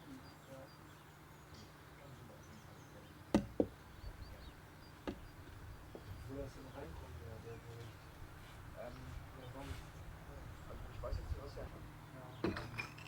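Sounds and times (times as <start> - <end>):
sharp knocks: 3.3 - 3.8, 5.0 - 6.1.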